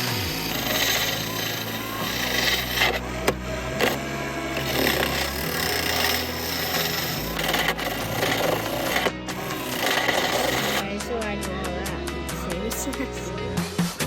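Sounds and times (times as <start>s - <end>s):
lathe motor hum: 0.0s - 11.2s
turning tool scraping wood: 0.0s - 11.2s.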